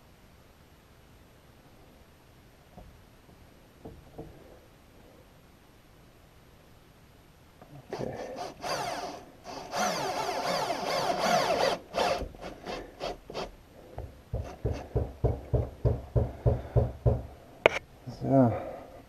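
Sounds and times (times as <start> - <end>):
power drill driving screw into wood: 8.0 - 13.5.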